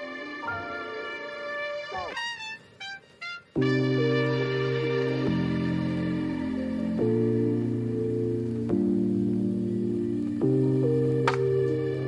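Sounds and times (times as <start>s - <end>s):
soft keyboard chords: 3.6s - 12.0s.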